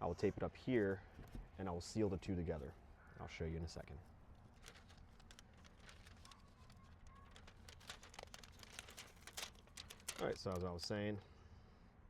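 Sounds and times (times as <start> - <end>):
foil crinkling and clicks: 4.5 - 10.8.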